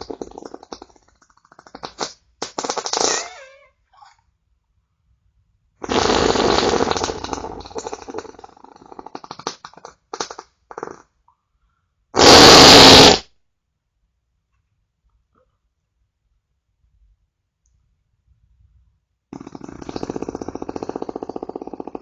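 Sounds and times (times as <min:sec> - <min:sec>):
farting: 0:00.0 - 0:04.1, 0:05.8 - 0:11.3, 0:12.2 - 0:13.3, 0:19.3 - 0:22.0.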